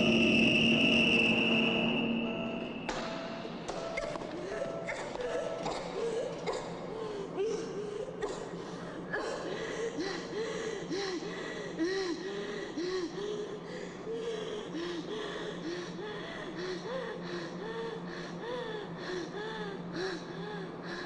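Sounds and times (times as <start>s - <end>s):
faint steady hum: 0.0s - 21.0s
woman coughing: 4.0s - 9.7s.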